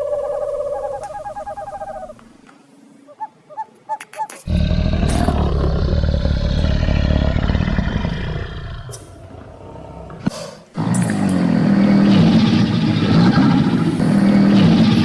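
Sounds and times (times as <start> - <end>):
pitched animal call pulsing: 0.0 - 2.3, 10.8 - 15.0
loud low rough animal call: 4.5 - 15.0.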